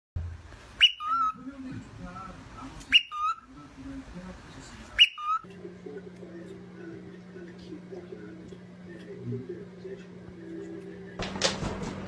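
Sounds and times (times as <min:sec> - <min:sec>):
whistled calls: 0:00.8 - 0:01.4, 0:02.8 - 0:03.5, 0:04.9 - 0:05.4.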